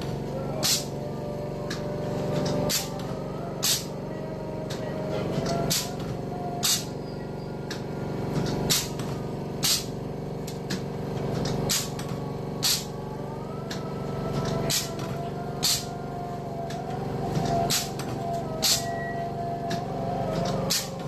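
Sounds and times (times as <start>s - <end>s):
machine humming: 0.0s - 21.0s.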